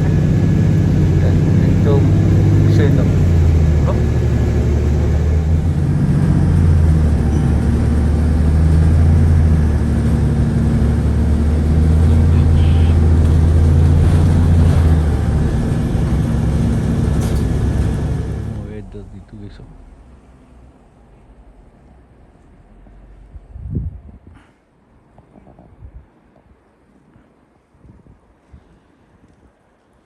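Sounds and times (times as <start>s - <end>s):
car engine drone: 0.0s - 23.7s
road noise: 0.0s - 24.5s.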